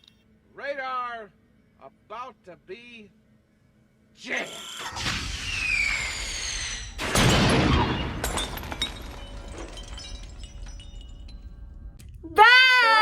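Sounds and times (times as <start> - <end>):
falling whistling tones: 5.3 - 7.0
glass shattering crash: 6.7 - 12.0
glass pieces clinking: 8.2 - 12.0.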